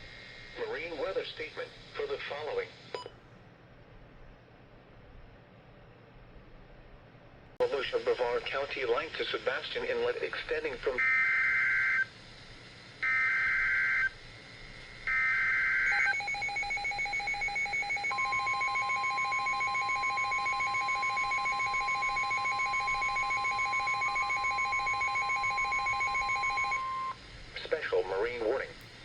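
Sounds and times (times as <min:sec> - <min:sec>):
steady warning alarm tone: 0:11.0 - 0:12.1, 0:13.0 - 0:14.2, 0:15.0 - 0:27.2
screeching data tone bursts: 0:15.0 - 0:27.2
rapidly pulsing electronic beep: 0:15.8 - 0:27.2.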